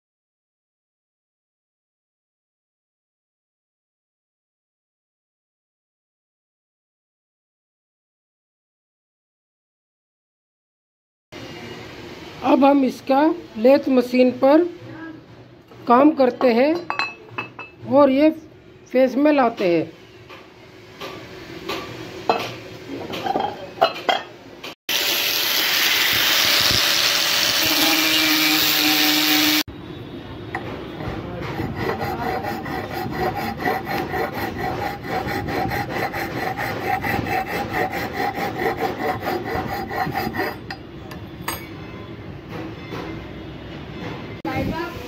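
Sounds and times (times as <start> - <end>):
lathe scraping metal: 31.2 - 40.8.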